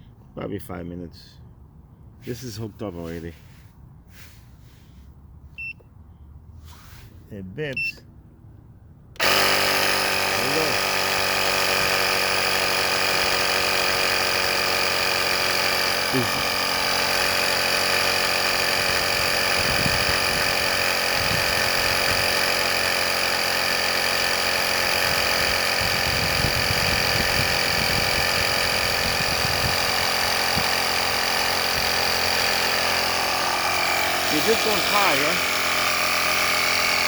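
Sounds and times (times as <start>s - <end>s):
air compressor humming and whining: 9.2s - 37.0s.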